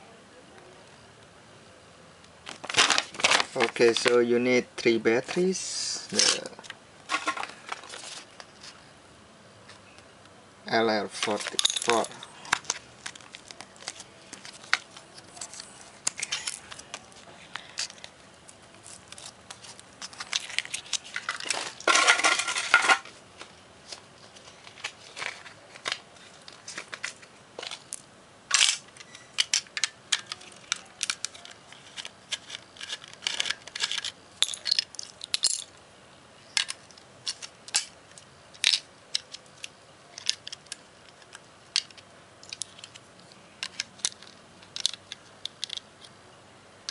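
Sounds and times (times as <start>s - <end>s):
rattling scrape: 19.1s - 23.1s
plastic and metal clicks: 36.6s - 46.1s.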